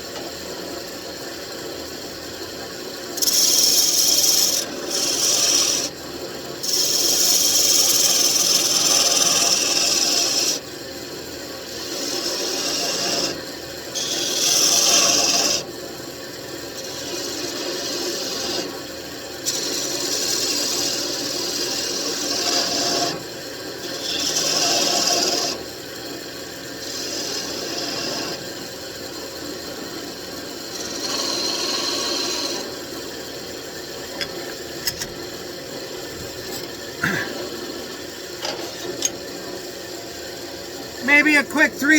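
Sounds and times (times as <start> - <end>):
tool scraping wood: 3.2 - 5.9, 6.6 - 10.6, 14.0 - 15.6, 23.9 - 25.6, 26.8 - 28.5, 30.7 - 32.7
wood lathe humming: 3.2 - 5.9, 6.5 - 10.6, 11.6 - 15.7, 16.7 - 18.7, 19.4 - 25.7, 26.6 - 33.5.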